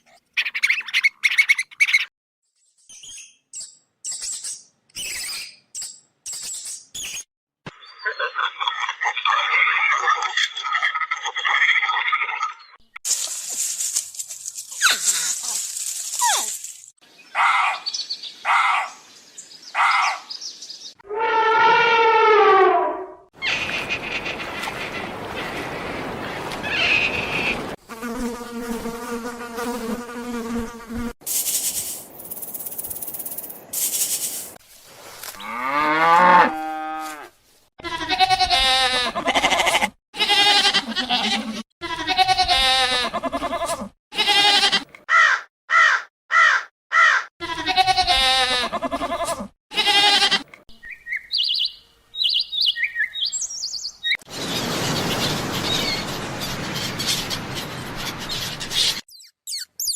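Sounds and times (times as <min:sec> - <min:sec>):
animal bleat-like cries: 0:37.8 - 0:50.5.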